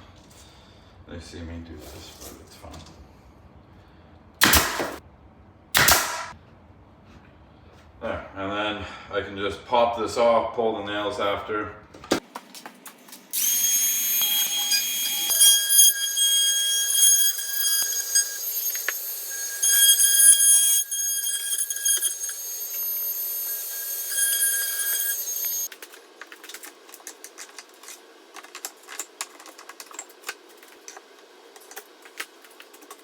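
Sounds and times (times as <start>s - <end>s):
power tool whining: 13.4s - 25.7s.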